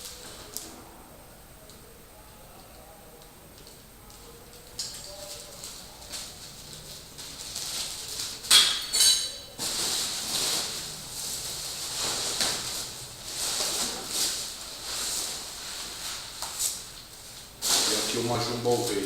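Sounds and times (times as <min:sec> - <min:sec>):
plastic packaging crinkling: 0:03.6 - 0:08.6, 0:09.5 - 0:19.0.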